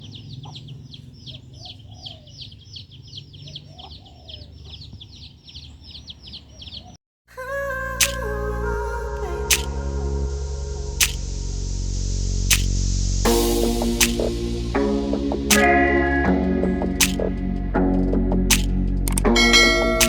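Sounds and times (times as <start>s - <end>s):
bird chirping rapidly: 0.0s - 7.0s
lower bird calls: 0.0s - 7.0s
sharp click: 8.0s - 8.2s, 9.5s - 9.8s, 11.0s - 11.2s, 12.5s - 12.8s, 14.0s - 14.3s, 15.5s - 15.8s, 17.0s - 17.4s, 18.5s - 19.3s
music: 8.0s - 20.0s.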